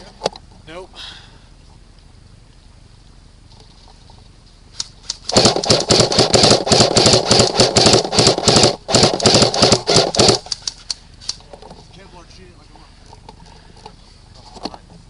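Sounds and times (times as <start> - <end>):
airsoft rifle full-auto bursts: 5.0 - 10.9.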